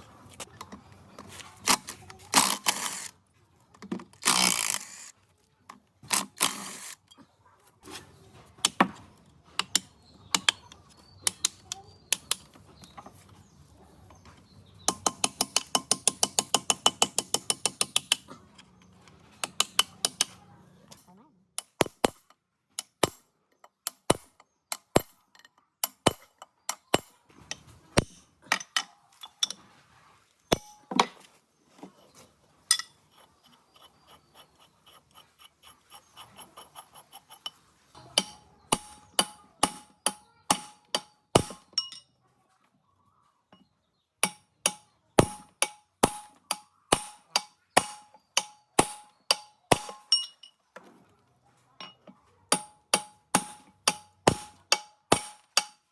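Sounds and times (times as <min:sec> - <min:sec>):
hammer tapping on metal: 0:14.9 - 0:18.3, 0:36.3 - 0:42.0, 0:44.2 - 0:50.5, 0:51.8 - 0:55.9.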